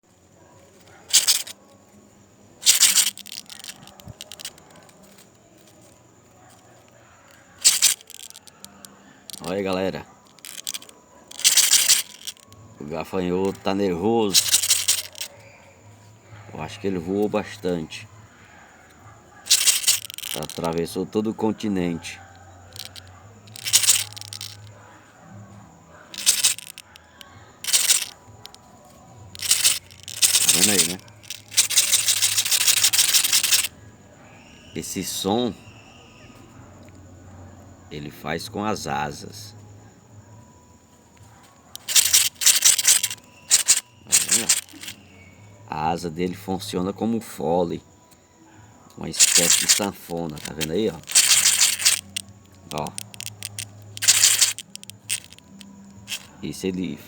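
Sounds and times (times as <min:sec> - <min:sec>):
faint clicks: 0:49.2 - 0:56.3.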